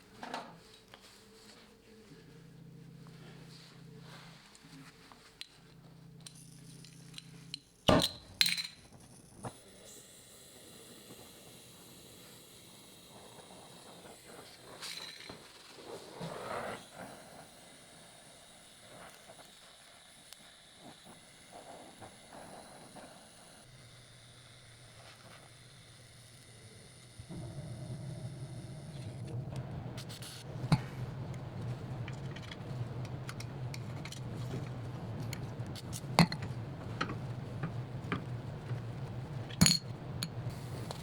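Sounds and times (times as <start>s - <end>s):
low steady hum: 27.2s - 41.0s
scraping and handling sounds: 29.0s - 41.0s
metal clinks and clanks: 30.7s - 40.5s.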